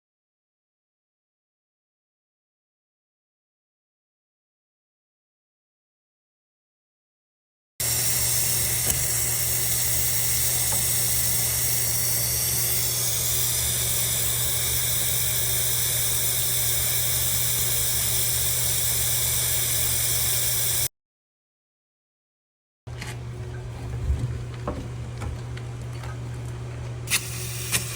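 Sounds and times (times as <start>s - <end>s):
water hissing through plumbing: 7.9s - 19.9s, 22.9s - 27.9s
low hum: 22.9s - 27.6s.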